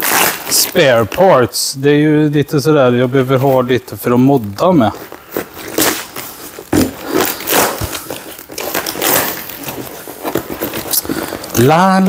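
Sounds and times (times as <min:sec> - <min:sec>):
paper rustling and tearing: 0:00.0 - 0:01.5, 0:04.4 - 0:12.0.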